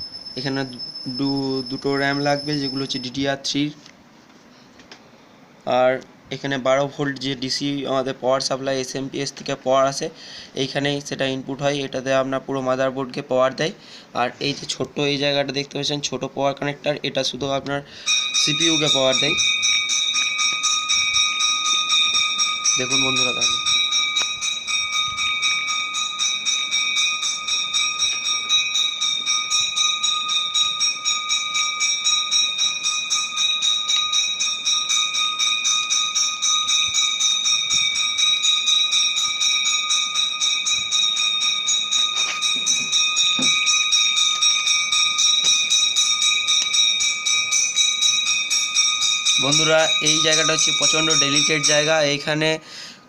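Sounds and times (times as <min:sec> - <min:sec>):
rapid jingling of small bells: 0:18.0 - 0:52.5.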